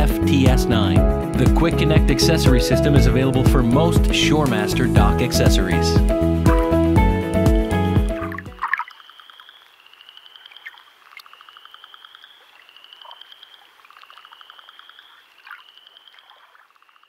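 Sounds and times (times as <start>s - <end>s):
frogs trilling: 8.2s - 17.0s.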